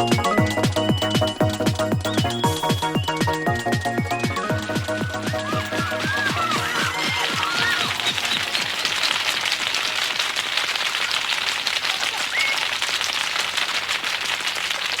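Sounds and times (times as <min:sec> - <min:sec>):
sped-up music crackling hiss: 0:00.0 - 0:10.3
squeaky rising glide: 0:00.7 - 0:09.1.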